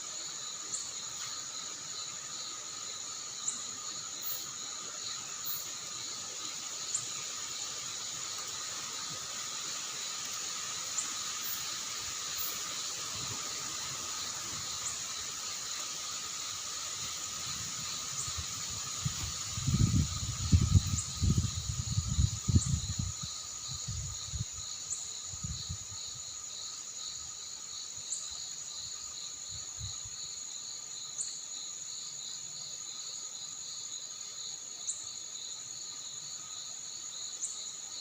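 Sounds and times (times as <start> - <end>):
wind hiss: 0.0 - 31.1
crickets chirping: 0.0 - 38.0
light rain: 7.7 - 16.2.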